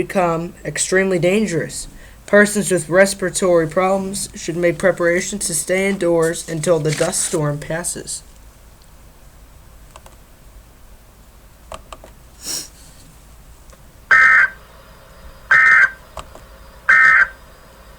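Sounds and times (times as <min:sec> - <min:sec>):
brief hiss: 0:12.4 - 0:13.2.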